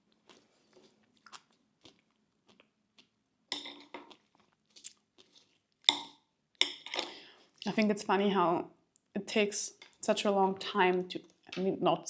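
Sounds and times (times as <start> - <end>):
person chewing and crunching: 0.0 - 6.2.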